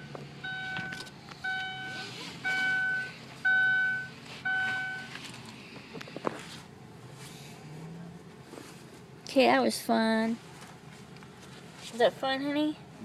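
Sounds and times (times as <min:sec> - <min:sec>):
vehicle reversing alarm beeping: 0:00.0 - 0:05.3.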